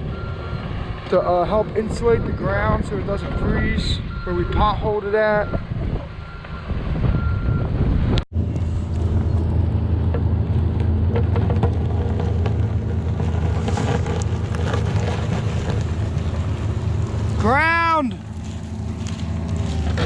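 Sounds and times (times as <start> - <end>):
diesel engine running: 7.2 - 20.0.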